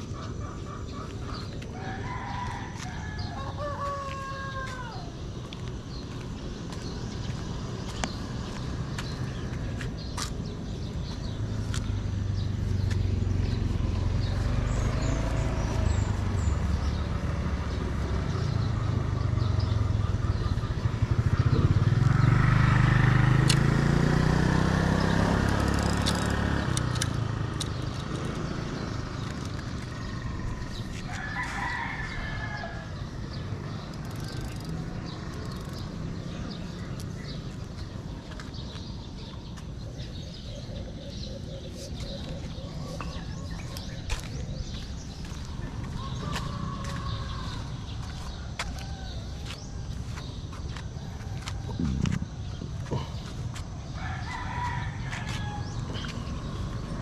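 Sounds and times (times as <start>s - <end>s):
rooster crowing: 1.8s - 5.2s, 31.1s - 33.2s, 45.9s - 49.6s, 54.0s - 56.2s.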